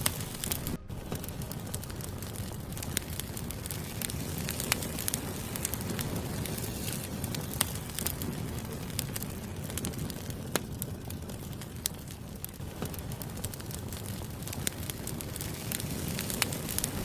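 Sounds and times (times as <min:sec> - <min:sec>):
logs crackling and popping: 0:00.0 - 0:17.0
wood fire rumbling and hissing: 0:00.0 - 0:17.0.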